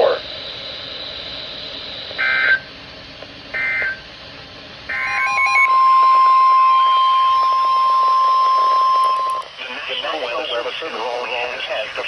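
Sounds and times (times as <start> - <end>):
steady alarm tone: 0.0 - 2.7, 3.5 - 4.0, 4.9 - 9.5
buzzy digital data tones: 4.9 - 9.4.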